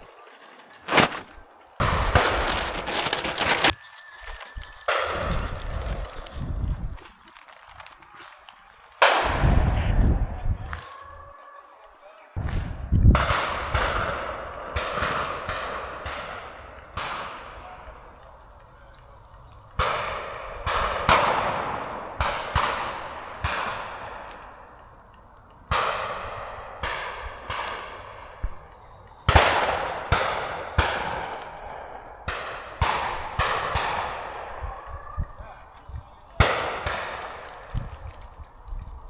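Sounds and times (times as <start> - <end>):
shotgun shots echoing: 9.0 - 9.9, 12.4 - 18.6, 19.8 - 25.0, 25.7 - 34.8, 36.3 - 37.7.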